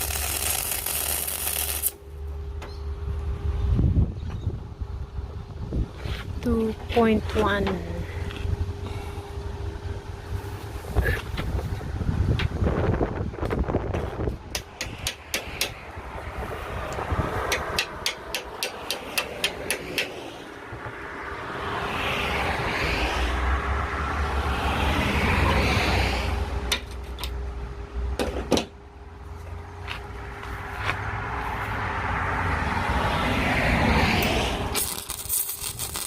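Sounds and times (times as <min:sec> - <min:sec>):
welder arc crackling and popping: 0:00.0 - 0:02.0, 0:34.8 - 0:36.0.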